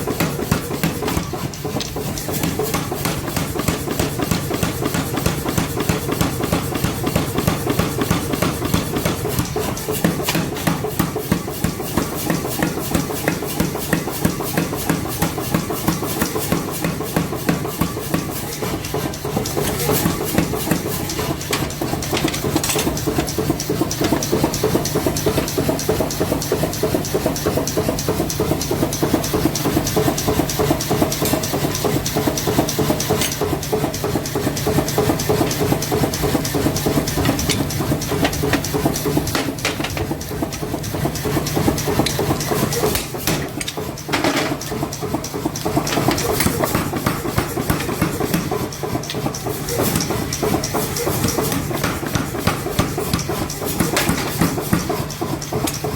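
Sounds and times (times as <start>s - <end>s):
forging hammer pounding steel: 0.0s - 55.9s
steady machine hum: 0.0s - 55.9s.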